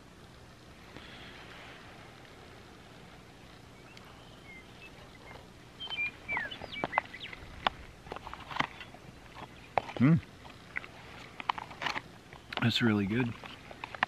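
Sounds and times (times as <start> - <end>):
faint outdoor hiss: 0.0 - 14.0
wild birds chirping and whistling: 3.2 - 7.7, 8.4 - 10.0.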